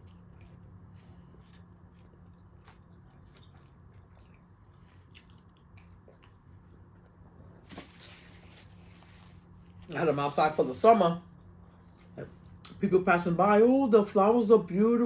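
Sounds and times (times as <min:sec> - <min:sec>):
chewing food: 0:00.0 - 0:07.6.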